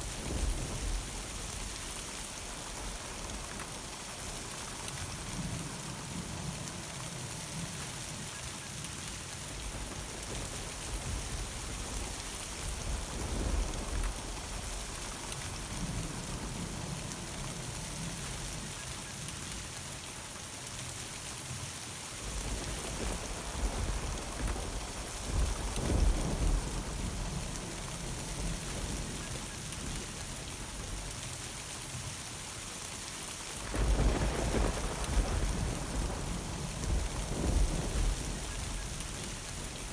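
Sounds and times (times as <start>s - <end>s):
rain pattering: 0.0s - 39.9s
thunder rumbling: 22.2s - 31.1s, 33.6s - 39.9s.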